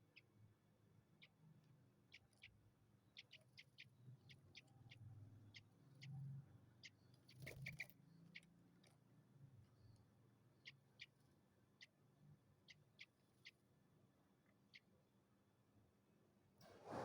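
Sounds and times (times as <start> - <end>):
bird chick chirping: 6.8 - 8.5.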